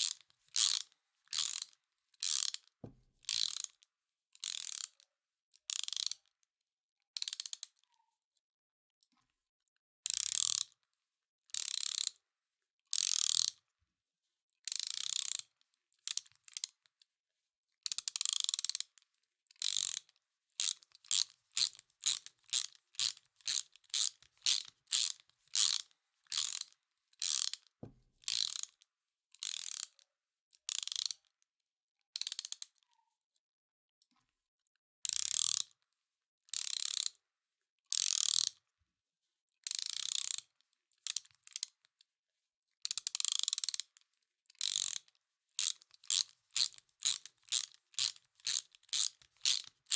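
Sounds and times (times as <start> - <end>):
ratchet wrench clicking: 0.0 - 2.6, 3.3 - 3.7, 4.4 - 4.9, 5.7 - 6.2, 10.1 - 10.6, 11.6 - 12.1, 13.0 - 13.6, 14.8 - 15.4, 18.1 - 18.8, 19.6 - 27.6, 28.3 - 28.7, 30.7 - 31.1, 35.1 - 35.6, 36.6 - 37.1, 37.9 - 38.5, 39.7 - 40.4, 43.0 - 43.8, 44.6 - 45.0, 45.6 - 49.9.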